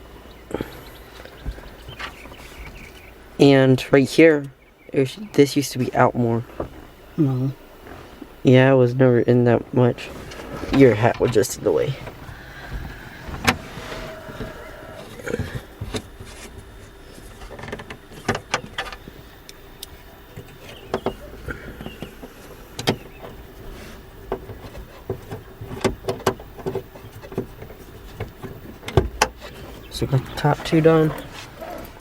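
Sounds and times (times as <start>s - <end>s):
faint steady hum: 0.0s - 32.0s.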